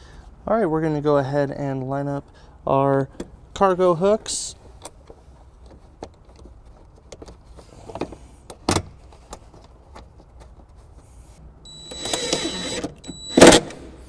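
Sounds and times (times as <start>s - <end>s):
power tool driving bolt: 11.7s - 14.0s.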